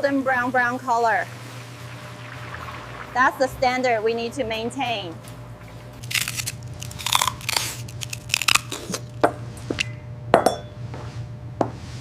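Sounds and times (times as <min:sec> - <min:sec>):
steady low hum: 0:00.0 - 0:12.0
fried chicken crunching: 0:06.0 - 0:09.2.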